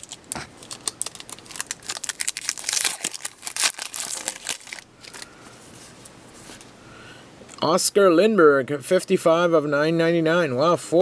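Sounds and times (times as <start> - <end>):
plastic wrappers crinkling: 0.0 - 5.3.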